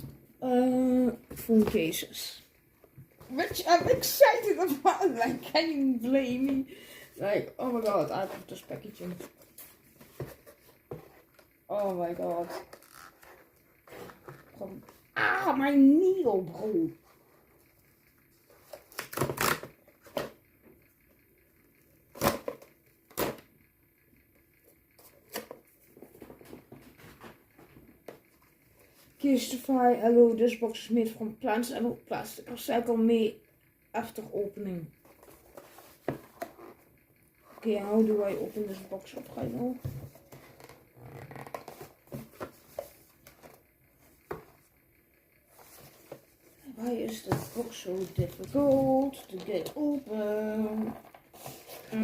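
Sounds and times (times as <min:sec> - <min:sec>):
cardboard rustling: 0:07.2 - 0:15.0, 0:37.7 - 0:44.6, 0:45.5 - 0:52.0.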